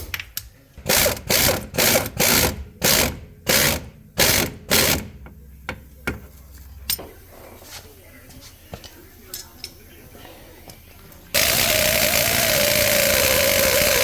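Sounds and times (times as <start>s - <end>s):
ratchet wrench clicking: 11.4s - 14.0s.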